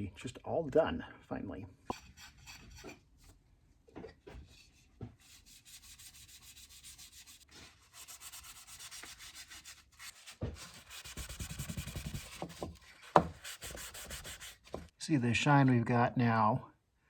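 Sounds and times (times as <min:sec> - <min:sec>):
wax buffing on wooden box: 0:05.3 - 0:14.9.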